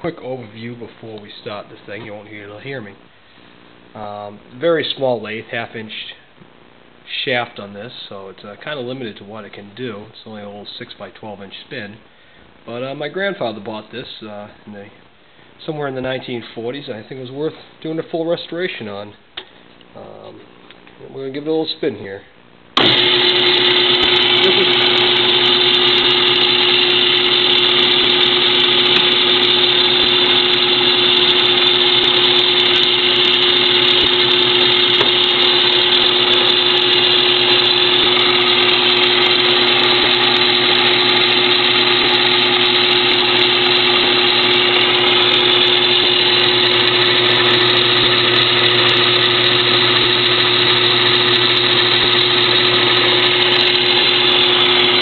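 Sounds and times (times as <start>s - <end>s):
metal lathe humming: 22.8s - 55.0s.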